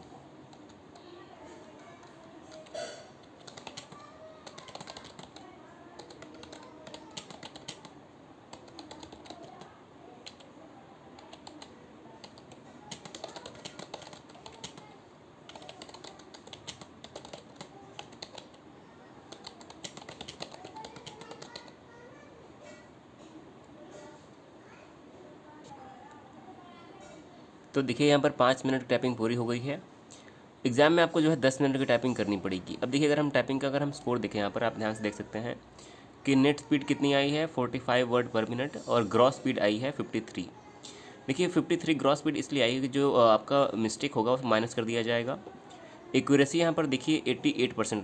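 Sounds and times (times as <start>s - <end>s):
typing on a keyboard: 2.0s - 10.5s, 11.2s - 14.9s, 15.5s - 18.6s, 19.3s - 21.8s.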